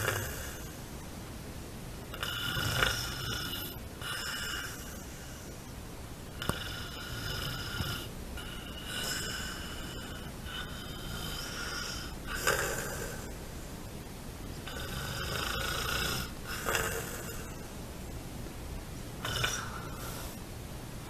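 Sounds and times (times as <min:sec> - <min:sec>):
whistling snoring: 0:02.2 - 0:05.4, 0:14.7 - 0:17.6, 0:19.2 - 0:20.4.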